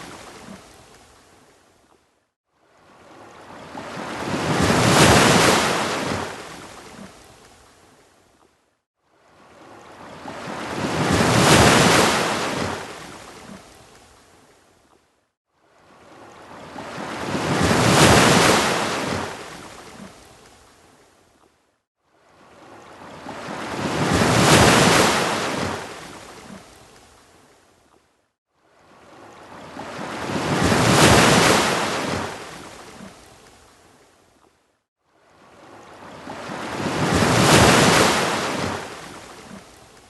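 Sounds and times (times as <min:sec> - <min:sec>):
ocean waves surging onto beach: 0:00.0 - 0:01.0, 0:02.6 - 0:07.5, 0:09.2 - 0:14.0, 0:15.7 - 0:20.6, 0:22.2 - 0:27.1, 0:28.7 - 0:33.8, 0:35.2 - 0:40.0.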